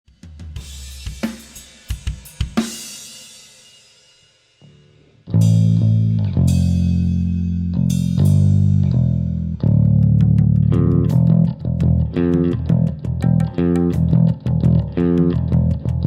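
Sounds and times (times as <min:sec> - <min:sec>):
electric bass guitar: 0:04.8 - 0:16.0.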